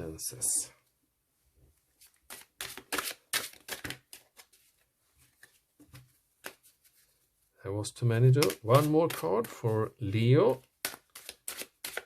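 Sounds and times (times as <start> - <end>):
cards being shuffled: 2.0 - 7.2, 8.3 - 12.0.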